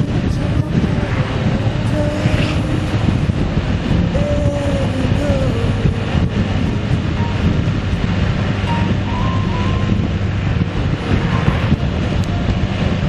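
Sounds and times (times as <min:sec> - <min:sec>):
vehicle low rumble: 0:00.0 - 0:13.0
wind buffeting microphone: 0:00.0 - 0:13.0.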